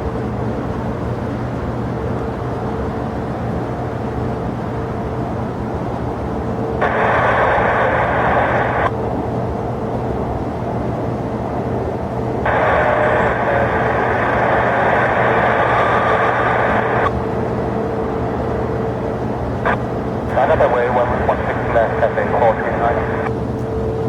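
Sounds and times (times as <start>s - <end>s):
low rumble of aircraft engines: 0.0s - 24.0s
radio static hiss: 6.8s - 8.9s, 12.5s - 17.1s, 19.6s - 23.3s.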